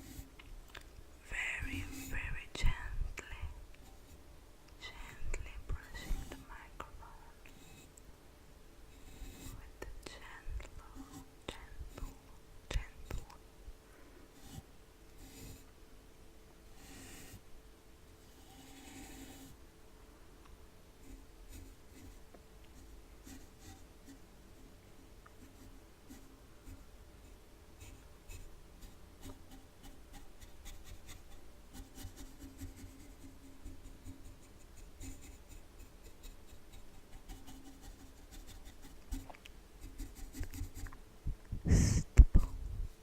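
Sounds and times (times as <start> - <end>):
brush stroking microphone: 1.4 - 2.8, 5.0 - 6.5, 8.9 - 9.8, 18.2 - 19.6, 21.0 - 24.7, 25.4 - 41.0, 41.6 - 42.6.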